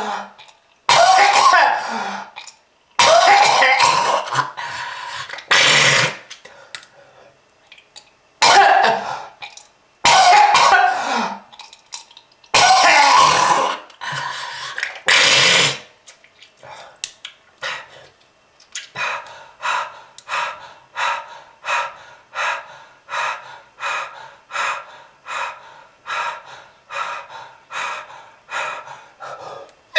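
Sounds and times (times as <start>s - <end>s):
person coughing: 0.9s - 2.0s, 3.0s - 4.6s, 8.4s - 9.2s, 10.1s - 11.5s, 12.6s - 13.8s.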